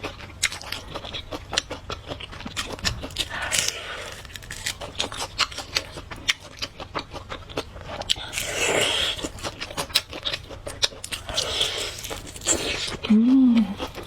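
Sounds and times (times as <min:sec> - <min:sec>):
close chewing with wet clicks: 0:00.0 - 0:13.1
food crunching: 0:00.0 - 0:14.0.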